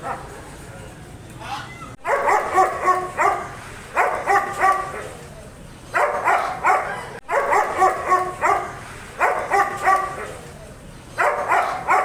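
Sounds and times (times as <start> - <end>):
dog barking: 2.0 - 5.2, 6.0 - 10.4, 11.2 - 12.0.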